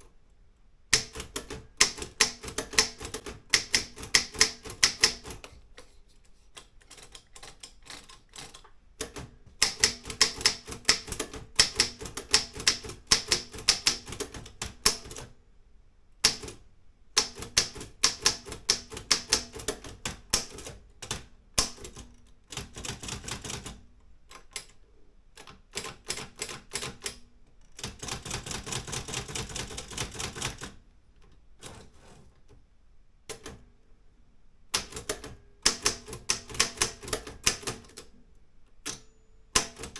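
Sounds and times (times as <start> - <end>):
manual typewriter key strikes: 1.0 - 5.4, 6.9 - 15.3, 16.2 - 16.6, 17.2 - 23.8, 34.8 - 38.0, 38.8 - 39.9.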